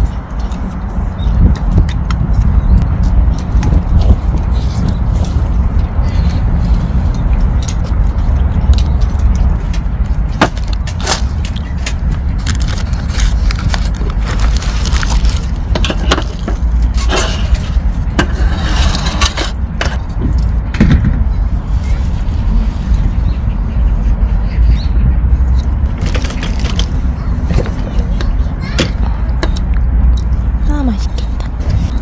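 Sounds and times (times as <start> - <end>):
clicks knocks and clattering: 25.6 - 30.3.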